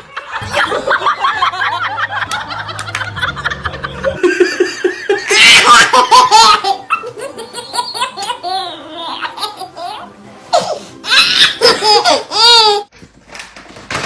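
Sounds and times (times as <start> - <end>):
people laughing hard: 0.0 - 8.5.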